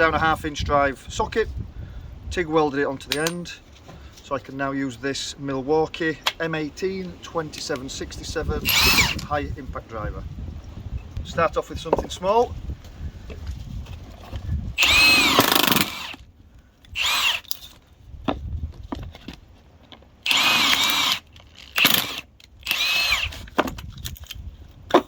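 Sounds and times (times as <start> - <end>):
impact wrench driving screw: 8.7 - 9.3, 14.8 - 16.2, 16.9 - 17.7, 20.3 - 24.2.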